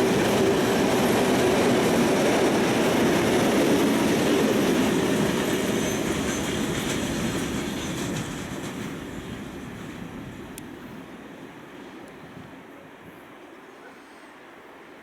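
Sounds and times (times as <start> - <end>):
freight train rolling on rails: 0.0 - 13.5.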